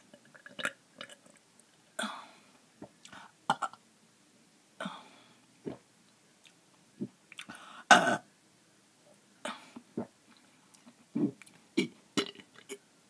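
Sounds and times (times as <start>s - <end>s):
woman burping: 7.9s - 8.3s, 11.2s - 12.8s.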